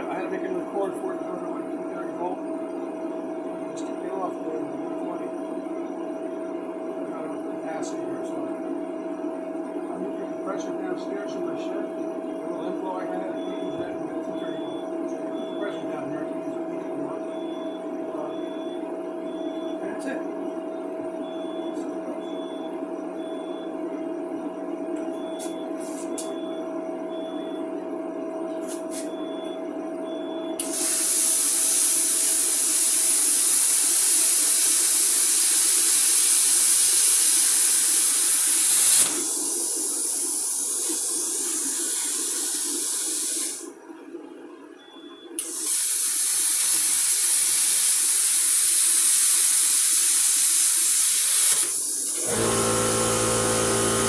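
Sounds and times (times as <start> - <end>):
plasma cutter torch hissing: 30.6 - 43.7, 45.4 - 54.0
motor humming: 50.0 - 54.0.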